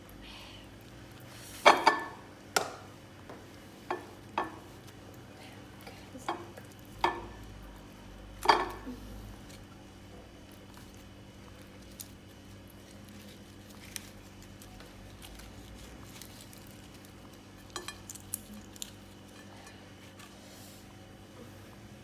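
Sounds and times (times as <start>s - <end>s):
utensils and dishes clinking: 1.6s - 2.2s, 8.4s - 9.0s, 17.6s - 20.3s.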